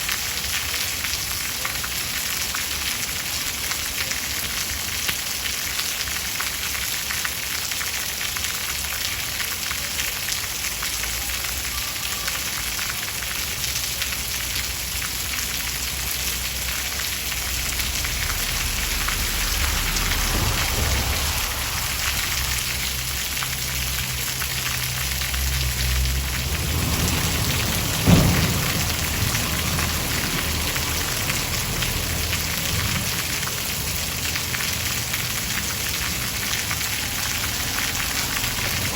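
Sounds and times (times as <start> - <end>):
steady rain falling: 0.0 - 38.9
thunder rumbling: 17.3 - 33.9
sharp thunderclap: 18.5 - 23.4, 26.3 - 31.3.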